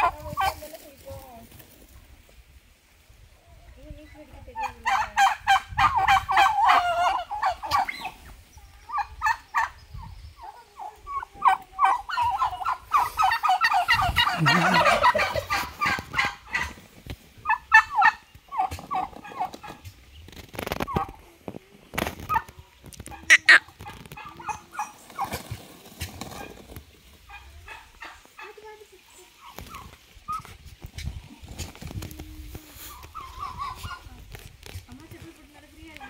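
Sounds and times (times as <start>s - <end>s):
turkeys gobbling: 0.0s - 0.7s, 4.6s - 8.3s, 8.9s - 9.8s, 10.4s - 21.2s, 21.9s - 31.8s, 32.8s - 34.1s.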